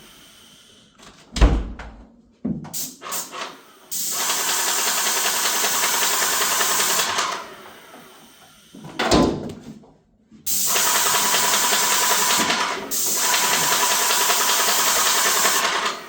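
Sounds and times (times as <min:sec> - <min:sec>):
loud low thump: 0:01.4 - 0:02.0
paint sprayer pump chattering: 0:03.0 - 0:07.4, 0:10.5 - 0:16.0.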